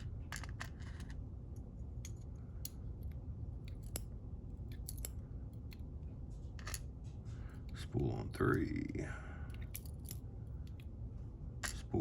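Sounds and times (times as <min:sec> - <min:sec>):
steady low hum: 0:00.0 - 0:12.0
metallic clicks of lock pins: 0:04.7 - 0:05.9.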